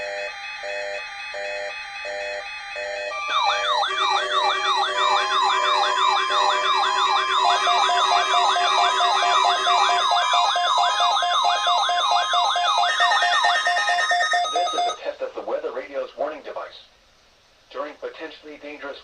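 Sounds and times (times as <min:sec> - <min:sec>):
electronic siren yelping: 0:00.0 - 0:15.0
steady high warning tone: 0:00.0 - 0:15.0.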